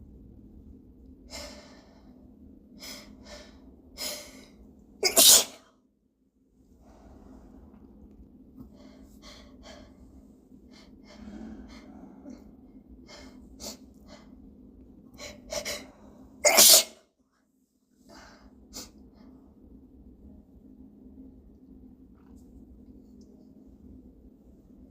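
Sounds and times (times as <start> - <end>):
person sneezing: 5.0 - 5.6, 16.4 - 17.0.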